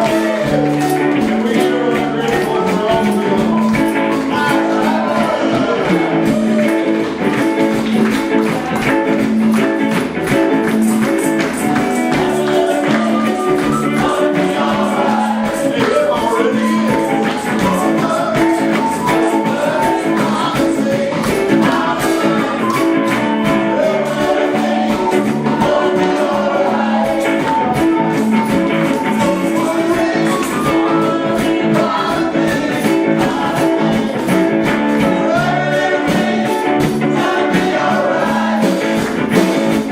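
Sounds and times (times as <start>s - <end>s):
people singing: 0.0s - 39.9s
plucked guitar: 0.0s - 39.9s
tambourine beat: 0.0s - 39.9s.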